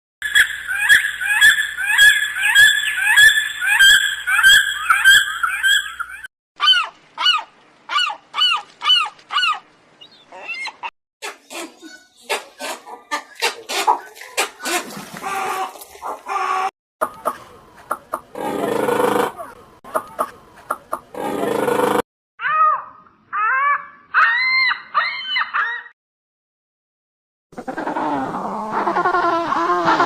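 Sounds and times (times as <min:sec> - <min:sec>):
rising and falling bird calls: 0:00.2 - 0:12.4, 0:22.4 - 0:25.9.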